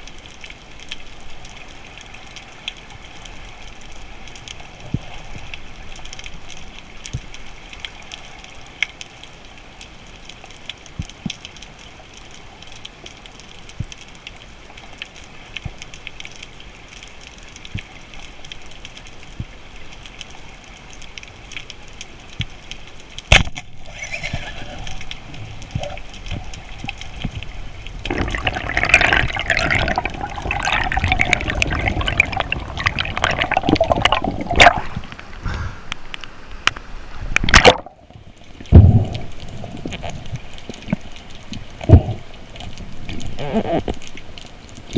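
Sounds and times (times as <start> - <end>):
underwater crackle and clicks: 0.0 - 44.9
water bubbling and gurgling: 23.2 - 44.9.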